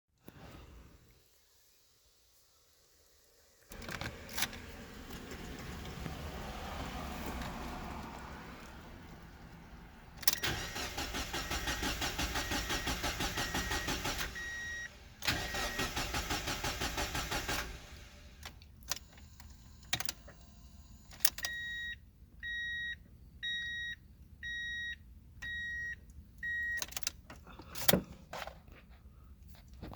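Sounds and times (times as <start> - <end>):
car engine cranking: 3.7 - 20.3
short electronic beeps: 12.4 - 14.9.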